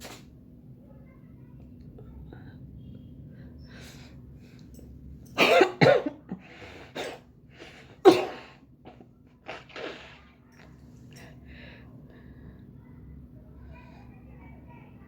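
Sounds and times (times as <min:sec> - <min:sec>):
person sneezing and coughing: 0:05.4 - 0:10.1.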